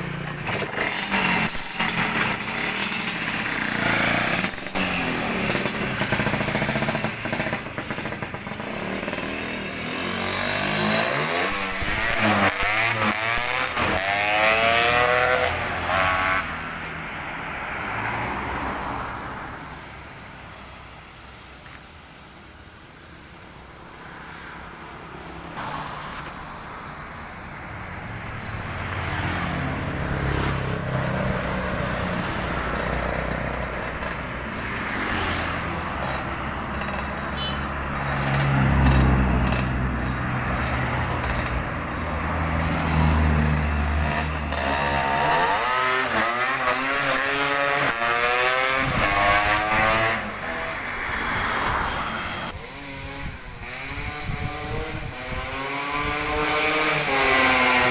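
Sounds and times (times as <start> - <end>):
scooter engine revving: 0.0 - 16.9, 28.7 - 57.9.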